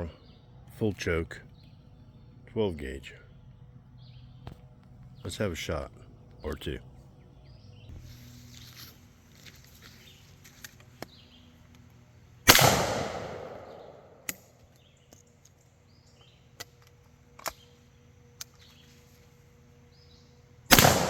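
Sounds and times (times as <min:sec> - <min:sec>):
shotgun shot with echo: 0:12.5 - 0:14.3, 0:20.7 - 0:21.0
shotgun action clicking: 0:12.5 - 0:15.6, 0:20.7 - 0:21.0.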